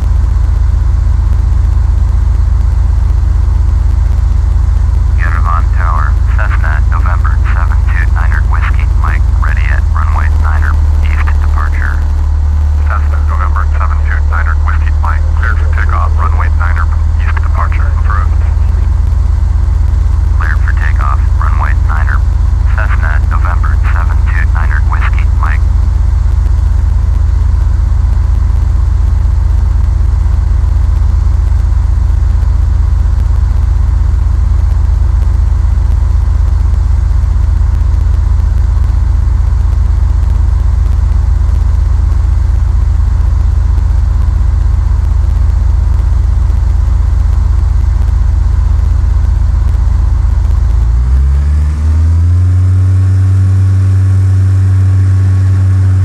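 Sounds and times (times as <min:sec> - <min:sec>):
propeller plane engine drone: 0:00.0 - 0:56.0.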